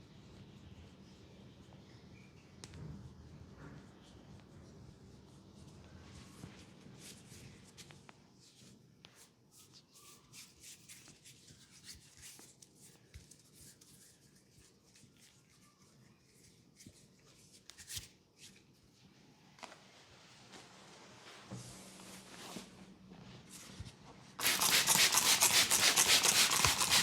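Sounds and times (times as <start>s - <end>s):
hands rubbing over skin: 24.4s - 27.0s.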